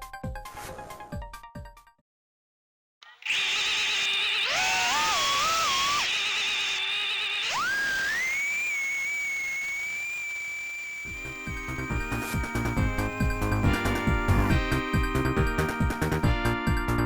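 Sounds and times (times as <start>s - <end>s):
quadcopter motors whining: 3.0s - 16.6s.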